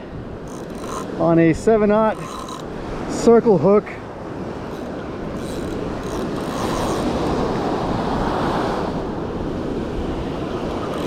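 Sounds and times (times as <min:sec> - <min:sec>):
wind rumbling on microphone: 0:00.0 - 0:11.0
surf washing up beach: 0:07.1 - 0:10.8.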